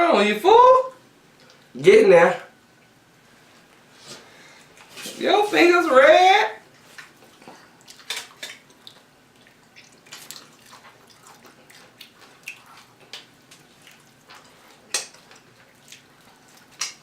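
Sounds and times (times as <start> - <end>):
chewing food: 6.7 - 17.0.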